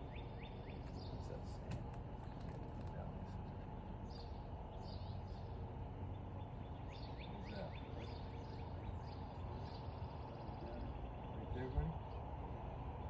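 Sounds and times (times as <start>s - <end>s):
low outdoor background noise: 0.0s - 13.0s
bird chirping: 4.0s - 12.2s.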